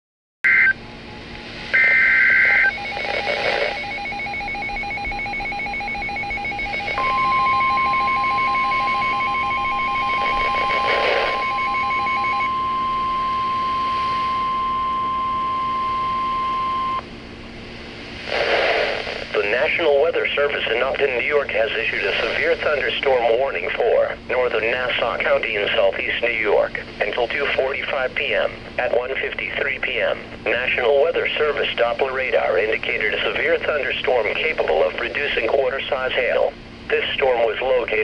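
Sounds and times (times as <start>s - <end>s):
steady warning alarm tone: 0.5s - 17.1s, 19.3s - 29.1s, 29.8s - 38.0s
fast-pulsing electronic beep: 1.8s - 17.0s.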